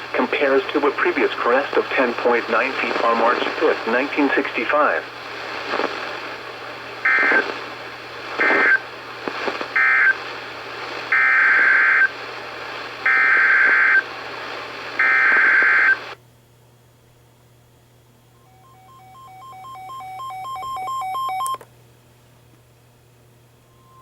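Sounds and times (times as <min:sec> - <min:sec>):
receiver hiss: 0:00.0 - 0:16.2, 0:23.4 - 0:24.0.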